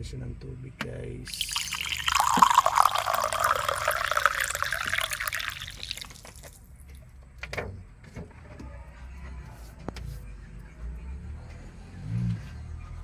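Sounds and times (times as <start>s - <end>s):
water pouring and splashing: 1.3s - 7.0s.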